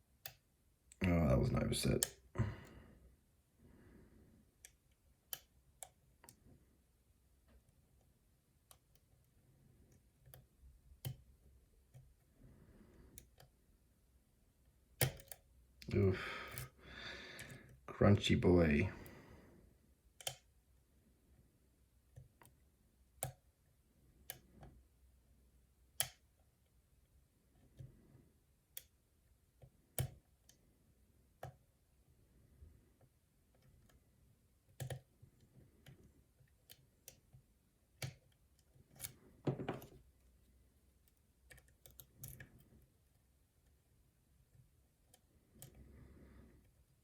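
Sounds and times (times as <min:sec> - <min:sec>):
faint metallic lock picking clicks: 0:04.6 - 0:06.4, 0:15.0 - 0:15.5, 0:20.2 - 0:20.5, 0:24.2 - 0:24.8, 0:26.0 - 0:26.3, 0:38.0 - 0:40.2, 0:41.0 - 0:42.8.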